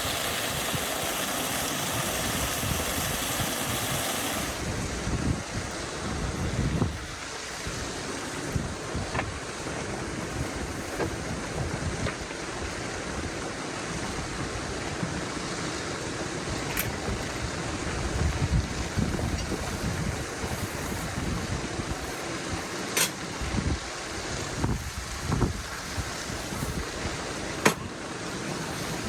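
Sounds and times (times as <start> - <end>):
gusty wind buffeting microphone: 0.0 - 15.4, 16.2 - 29.0.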